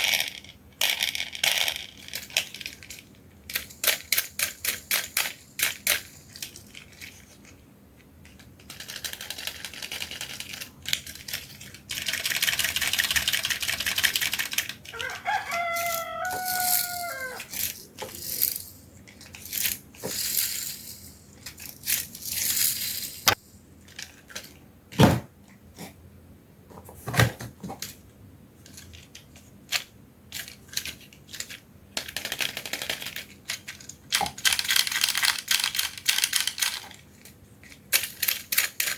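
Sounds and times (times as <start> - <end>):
toys and plastic packaging handled: 0.0 - 24.6, 28.6 - 38.9
rooster crowing: 14.9 - 17.6.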